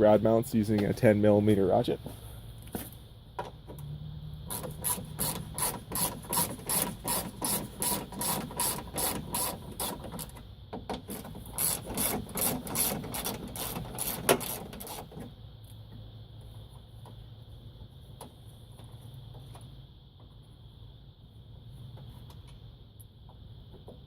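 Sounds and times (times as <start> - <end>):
ratchet wrench clicking: 4.5 - 10.4, 11.1 - 15.1.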